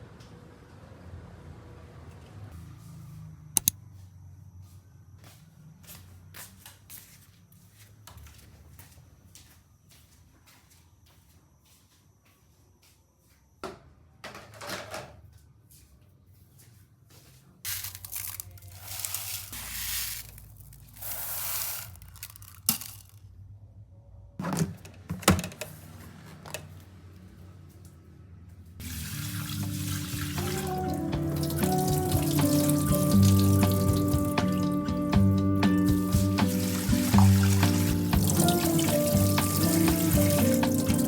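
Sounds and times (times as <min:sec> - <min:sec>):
things clattering in sink: 0:14.3 - 0:15.2
tap water running into sink: 0:28.8 - 0:34.7, 0:35.6 - 0:41.0.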